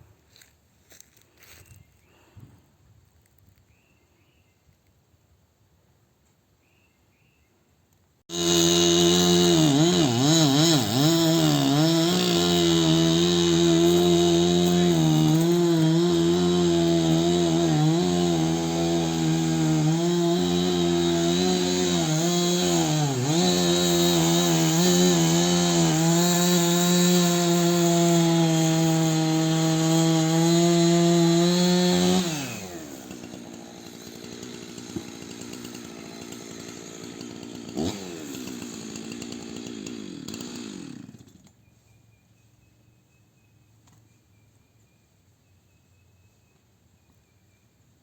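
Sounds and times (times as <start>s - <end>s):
chainsaw idling: 8.3s - 41.5s
chainsaw cutting a tree: 8.3s - 41.6s.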